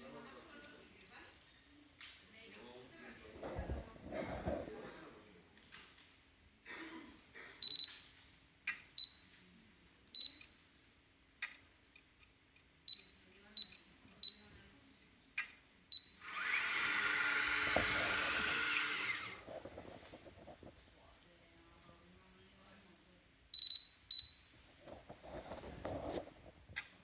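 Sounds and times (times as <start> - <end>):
servo motors whirring: 16.2 - 19.5.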